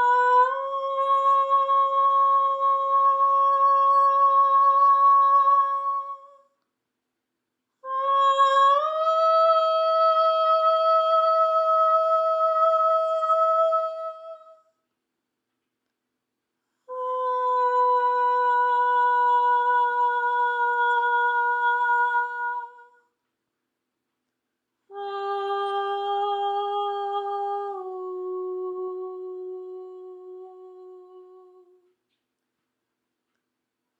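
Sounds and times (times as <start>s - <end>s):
person humming long tones: 0.0s - 6.5s, 7.8s - 14.6s, 16.9s - 23.0s, 24.9s - 31.9s.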